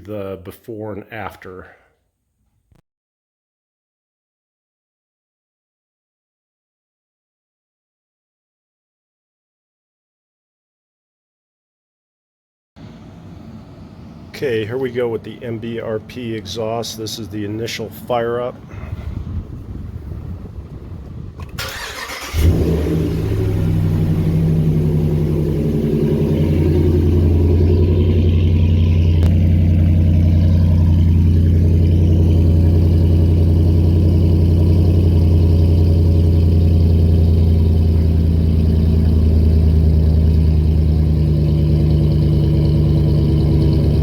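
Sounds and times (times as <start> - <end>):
engine idling: 12.8 - 44.0
engine cranking and starting: 21.4 - 44.0.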